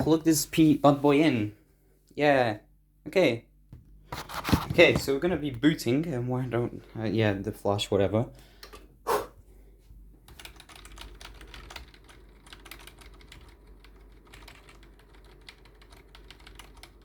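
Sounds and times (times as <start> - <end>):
keyboard keys tapping rapidly: 10.3 - 17.0.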